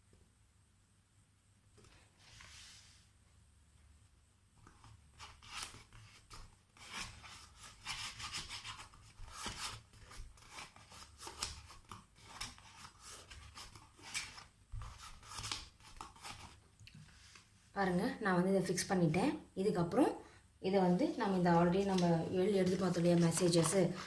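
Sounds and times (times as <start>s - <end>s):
paper sliding on paper: 2.1s - 3.1s.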